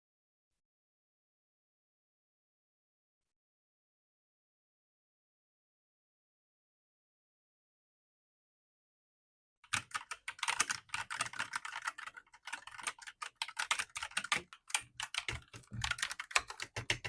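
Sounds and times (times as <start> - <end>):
mechanical keyboard typing: 9.7 - 17.0.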